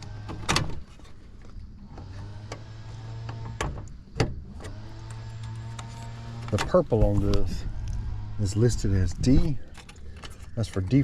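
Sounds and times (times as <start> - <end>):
low electrical hum: 0.0 - 11.0
clicks and knocks of handled parts: 9.3 - 11.0.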